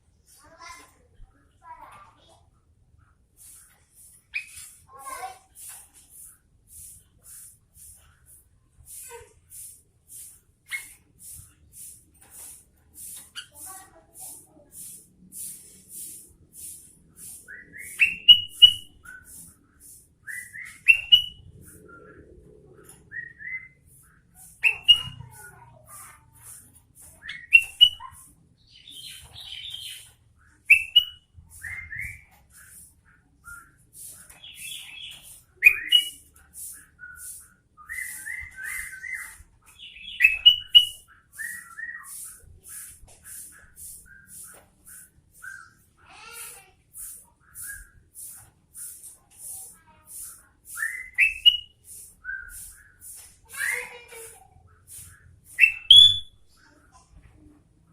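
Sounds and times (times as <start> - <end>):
bird chattering notes: 8.9 - 56.4
bulbul whistled song: 17.3 - 19.5, 20.2 - 22.2, 23.0 - 23.9, 24.6 - 25.2, 27.2 - 28.2, 30.7 - 32.4, 33.4 - 42.5, 43.9 - 45.8, 47.5 - 48.1, 50.7 - 53.9, 55.5 - 56.4.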